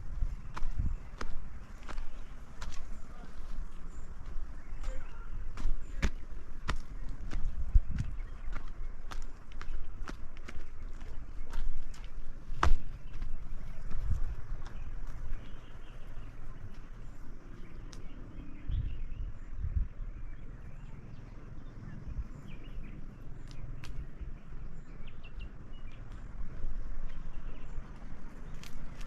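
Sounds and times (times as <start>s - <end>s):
faint bird chirps: 0.3s - 8.8s.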